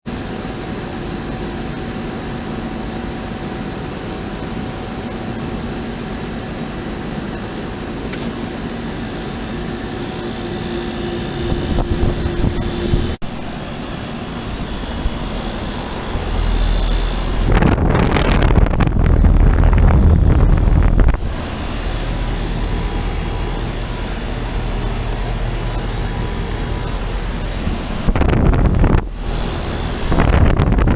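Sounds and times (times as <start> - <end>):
air conditioner unit hum: 0.1 - 30.9
air buffeting microphone: 7.2 - 30.9
rush of air: 8.3 - 30.9.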